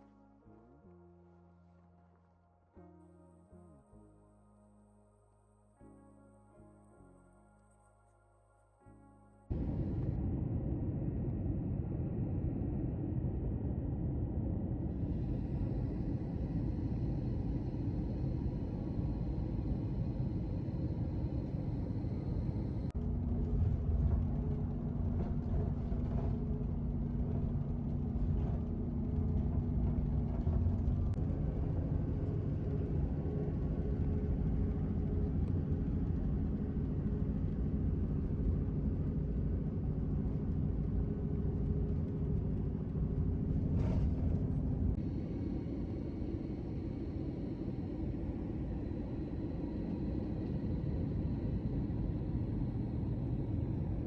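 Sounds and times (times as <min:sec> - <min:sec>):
engine hum: 0:09.5 - 0:54.0
vehicle low rumble: 0:09.5 - 0:54.0.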